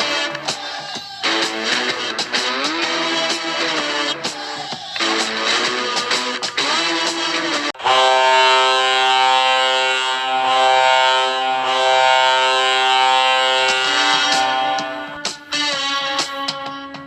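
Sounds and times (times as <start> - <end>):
goal horn blast: 0.0 - 0.6, 1.2 - 4.3, 5.0 - 17.0
guitar rock song: 0.0 - 7.9, 12.6 - 17.0
music: 0.0 - 7.9, 11.6 - 17.0.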